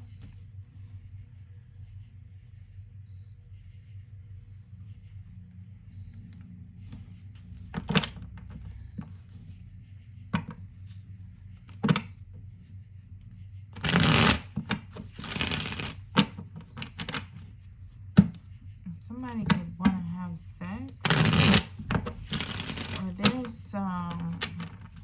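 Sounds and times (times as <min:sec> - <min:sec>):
low steady hum: 0:00.0 - 0:25.0
cards snapping: 0:13.8 - 0:16.3, 0:21.0 - 0:23.4
cards shuffling: 0:13.8 - 0:17.5, 0:21.0 - 0:25.0.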